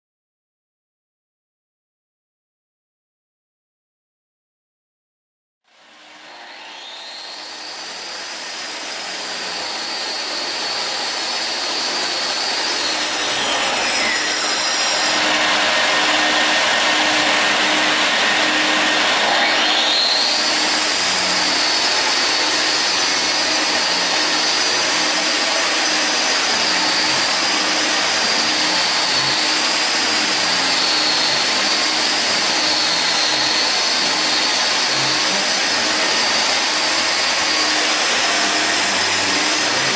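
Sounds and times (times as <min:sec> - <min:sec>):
concrete grinder whining: 0:05.7 - 0:39.9
grinding and suction noise: 0:20.3 - 0:39.9.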